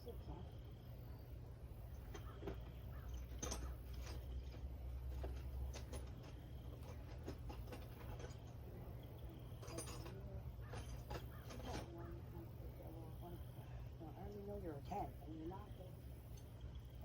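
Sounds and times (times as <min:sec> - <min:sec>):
steady low hum: 0:00.0 - 0:17.0
hand tools and metal parts clicking: 0:01.8 - 0:12.2, 0:16.2 - 0:16.9.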